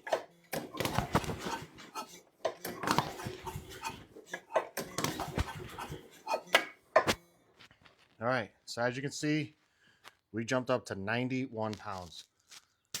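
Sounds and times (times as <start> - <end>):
recoil starter rope pulls: 0.0 - 7.2.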